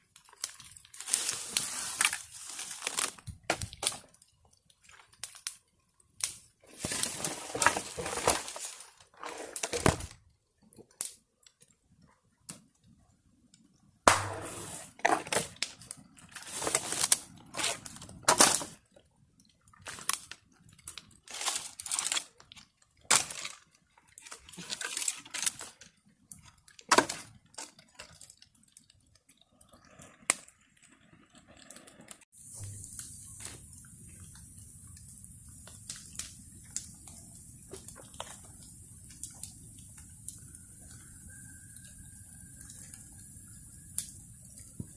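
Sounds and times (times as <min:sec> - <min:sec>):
bonfire crackling and popping: 0:00.0 - 0:44.9
steady hiss: 0:14.1 - 0:15.5, 0:32.4 - 0:44.9.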